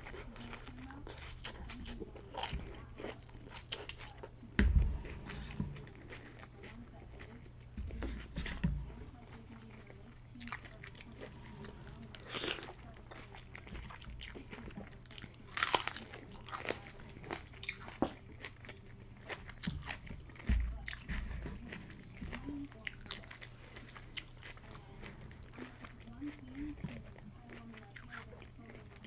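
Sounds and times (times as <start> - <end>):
steady low hum: 0.0 - 17.8
crunchy biting and wet chewing: 0.0 - 29.0.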